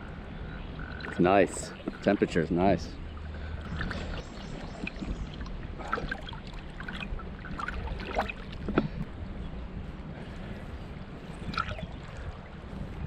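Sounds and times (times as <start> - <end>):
river current running: 0.0 - 9.3
legs wading through water: 0.6 - 13.0.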